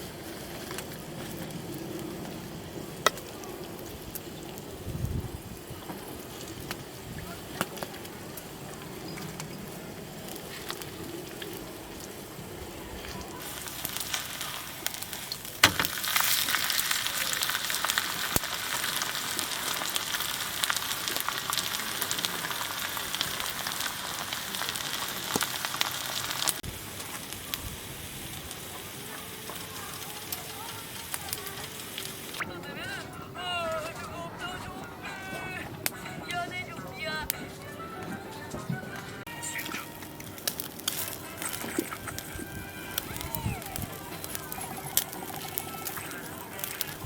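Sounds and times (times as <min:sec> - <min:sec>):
food sizzling in a pan: 0:10.0 - 0:32.4, 0:39.3 - 0:47.0.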